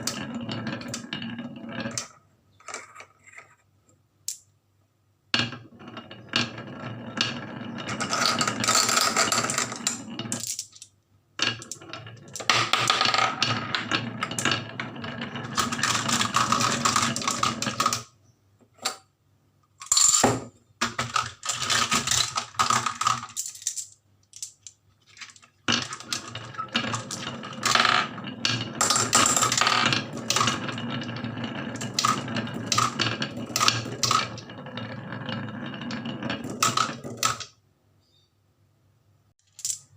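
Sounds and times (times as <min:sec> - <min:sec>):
marbles rattling down wooden run: 0:00.0 - 0:02.1, 0:05.4 - 0:10.8, 0:11.4 - 0:18.1, 0:20.8 - 0:37.5.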